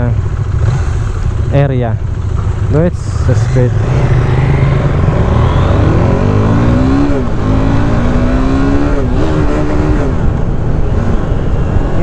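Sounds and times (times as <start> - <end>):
low wind rumble: 0.0 - 12.0
motorcycle engine accelerating: 0.0 - 12.0.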